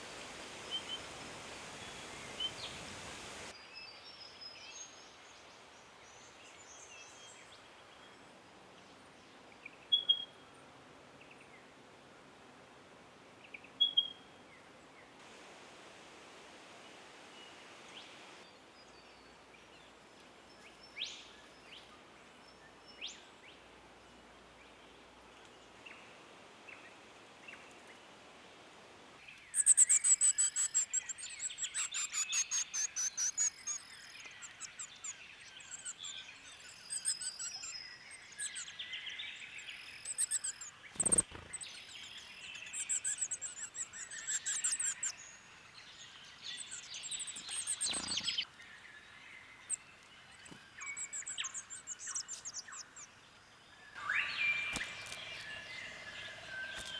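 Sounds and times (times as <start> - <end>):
forest birds trilling and whistling: 0.0 - 3.6, 29.2 - 56.9.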